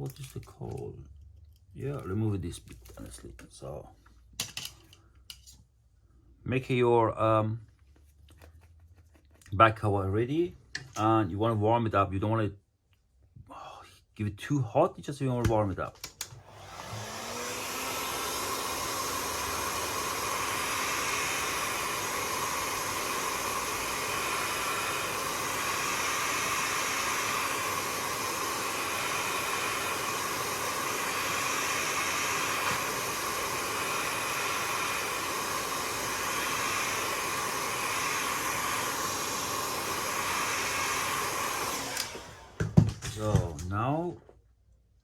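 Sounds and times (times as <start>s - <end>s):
heat gun blowing: 16.1s - 42.8s.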